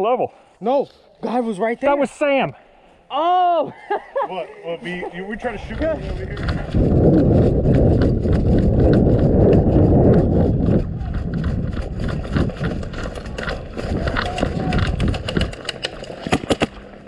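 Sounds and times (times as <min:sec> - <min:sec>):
footsteps: 0:05.0 - 0:16.4.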